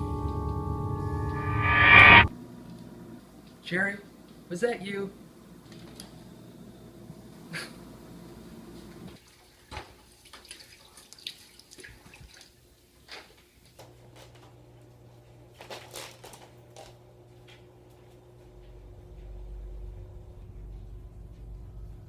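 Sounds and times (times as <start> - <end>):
low steady hum: 0.0 - 2.3.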